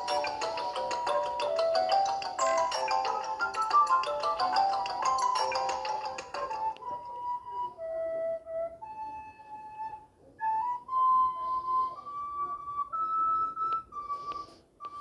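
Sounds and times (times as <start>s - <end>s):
phone ringtone flute-like melody: 0.0s - 7.8s, 11.5s - 12.6s, 13.4s - 15.0s.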